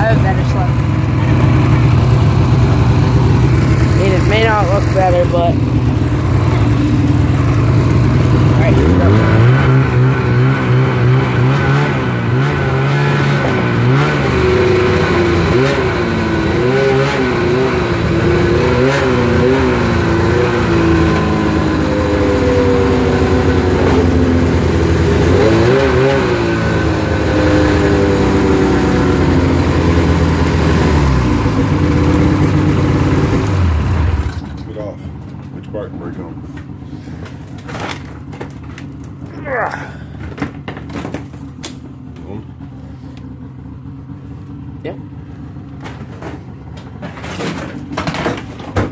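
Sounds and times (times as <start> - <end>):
snowmobile engine revving: 0.0 - 34.4.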